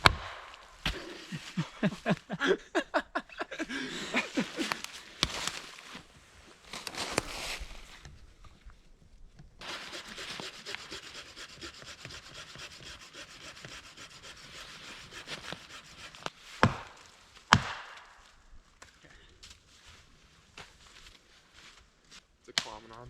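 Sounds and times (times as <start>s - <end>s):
sharp wood cracks: 0.0s - 1.3s, 16.6s - 19.0s
hand saw rasping through wood: 9.6s - 16.3s.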